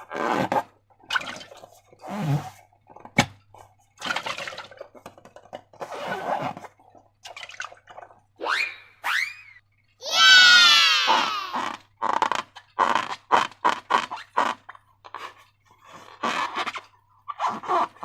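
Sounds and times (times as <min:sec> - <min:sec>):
rubber balloon squealing: 0:08.4 - 0:14.7.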